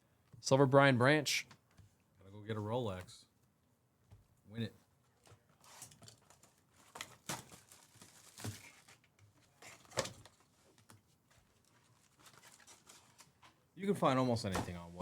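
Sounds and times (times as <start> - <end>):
foil wrappers crinkling and tearing: 5.6 - 10.9, 11.5 - 13.4.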